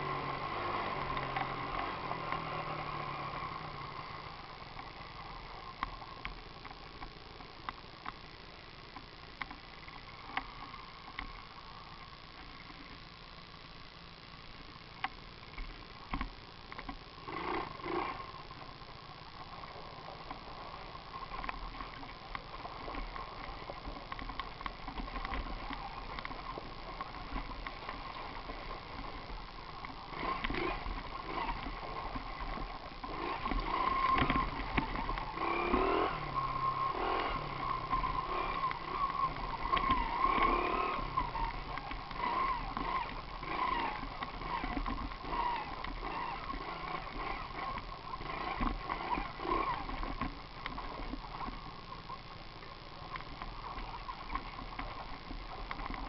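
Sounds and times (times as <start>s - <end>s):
small motorbike engine whining: 0.0s - 5.9s, 17.2s - 18.6s, 29.9s - 51.5s.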